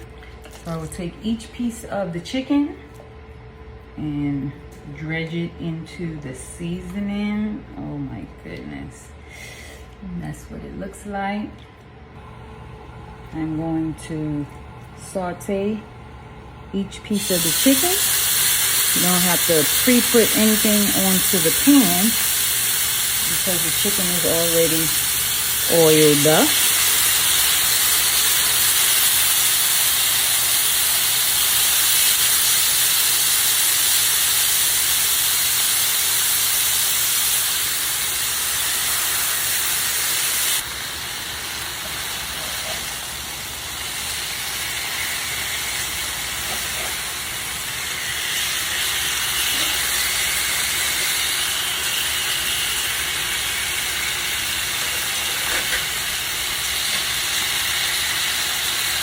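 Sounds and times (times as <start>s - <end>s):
chicken sizzling in a pan: 17.2s - 59.0s.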